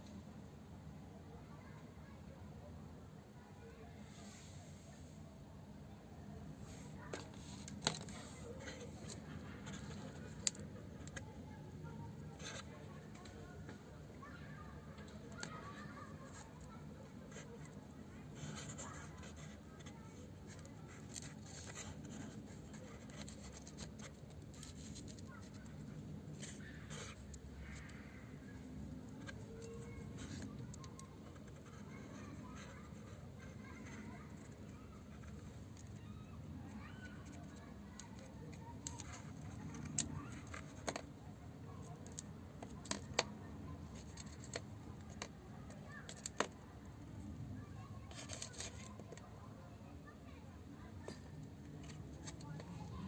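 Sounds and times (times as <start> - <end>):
tools and small parts handled: 7.1 - 11.2, 18.4 - 27.8, 28.6 - 36.0, 36.7 - 41.2, 41.9 - 46.6, 48.1 - 49.4, 51.0 - 53.0.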